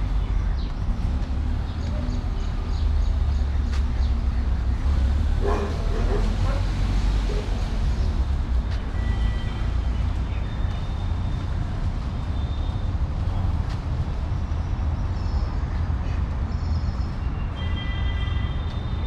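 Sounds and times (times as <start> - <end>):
birds chirping: 0.0 - 19.0
road traffic rumble: 0.0 - 19.0.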